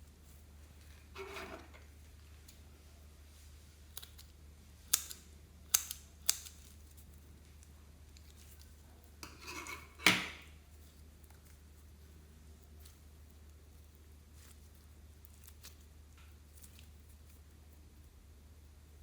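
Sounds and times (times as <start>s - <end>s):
scraping rustle: 0.1s - 2.1s.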